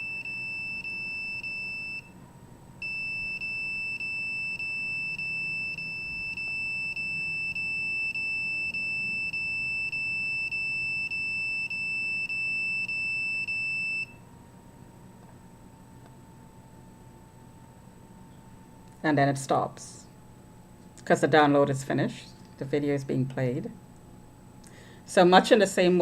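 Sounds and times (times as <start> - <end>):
high electronic alarm tone: 0.0 - 2.1, 2.8 - 14.2.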